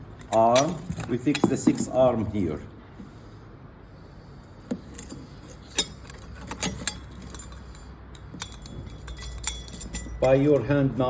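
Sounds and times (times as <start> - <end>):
metallic clinks and taps: 0.0 - 2.0, 4.7 - 11.0.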